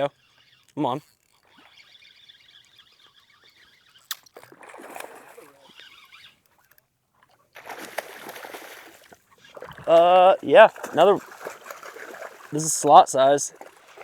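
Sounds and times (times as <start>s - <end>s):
fish splashing at water surface: 1.3s - 6.1s, 7.6s - 14.0s.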